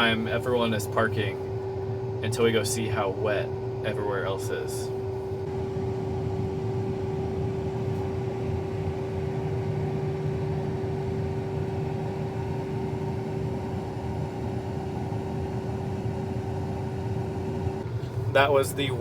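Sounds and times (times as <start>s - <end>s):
farm machine engine droning: 0.0s - 1.5s.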